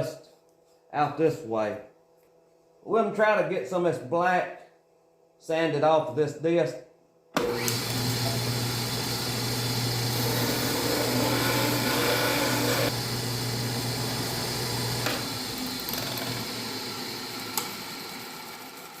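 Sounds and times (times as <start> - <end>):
disc sander motor humming: 7.4 - 19.0
wood pressed on sanding disc: 10.1 - 13.0.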